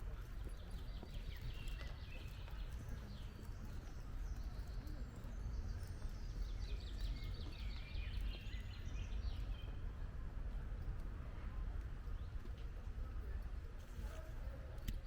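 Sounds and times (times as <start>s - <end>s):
small birds chirping: 0.2s - 9.8s.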